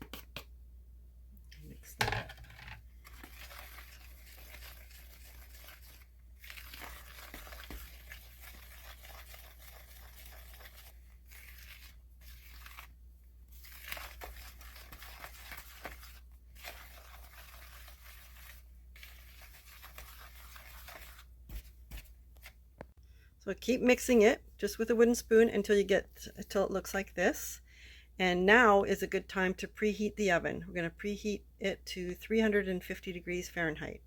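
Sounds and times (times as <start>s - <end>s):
wooden spoon stirring dough: 2.9s - 22.5s.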